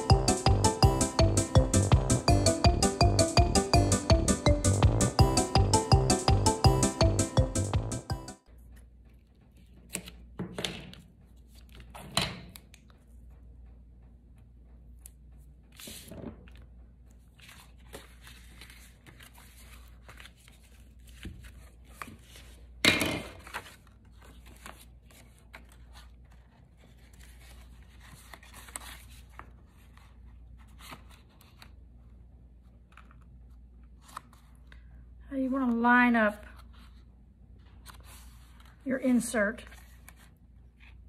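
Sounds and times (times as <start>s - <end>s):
paper rustling: 17.2s - 31.8s, 36.6s - 38.8s.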